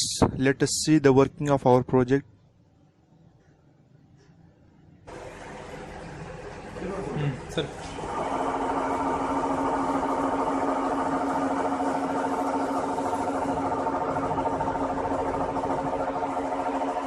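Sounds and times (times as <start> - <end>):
lathe motor humming with flutter: 5.1 - 17.0.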